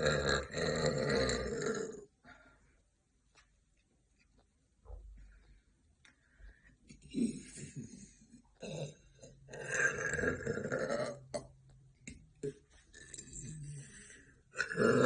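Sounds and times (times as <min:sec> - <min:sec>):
woman burping: 0:00.0 - 0:02.1, 0:08.6 - 0:11.6, 0:14.5 - 0:15.0.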